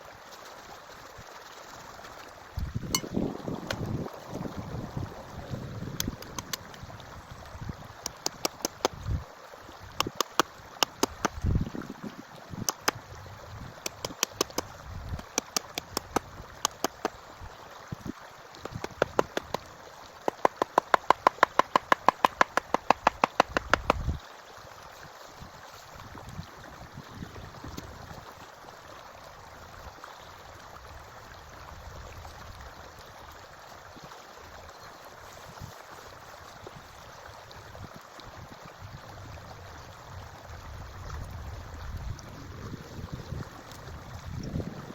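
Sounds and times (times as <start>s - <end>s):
forest stream rushing: 0.0s - 44.9s
hammer striking wood: 20.3s - 24.0s.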